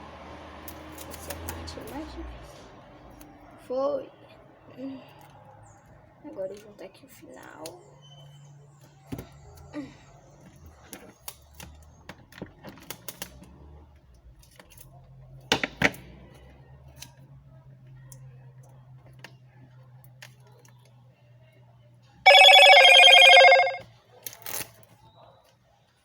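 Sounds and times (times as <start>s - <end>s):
electronic tone: 22.3s - 23.8s.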